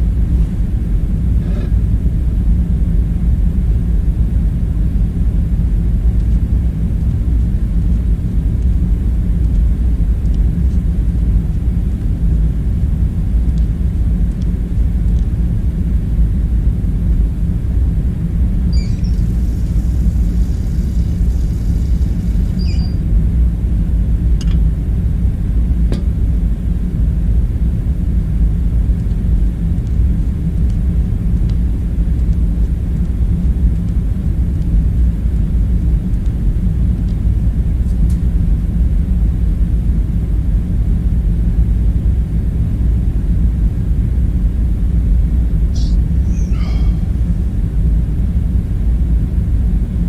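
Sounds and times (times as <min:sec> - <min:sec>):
low rumbling room hum: 0:00.0 - 0:50.0
short wavering high sound: 0:45.8 - 0:47.4.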